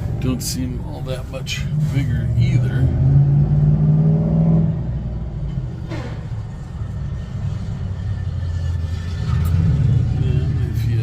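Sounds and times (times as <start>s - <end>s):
low mechanical rumble: 4.7s - 11.0s
brief scrape: 5.8s - 7.8s.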